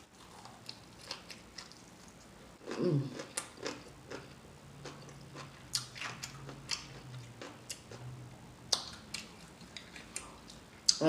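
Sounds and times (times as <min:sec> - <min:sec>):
low steady hum: 0:00.0 - 0:11.0
person chewing with open mouth: 0:00.1 - 0:08.1, 0:08.7 - 0:11.0
lip smacks and clicks: 0:08.7 - 0:11.0.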